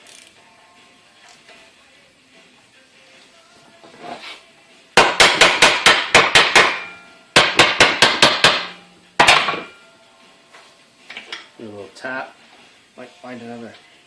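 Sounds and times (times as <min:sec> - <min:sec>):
hammer striking metal vise: 0:05.0 - 0:09.8.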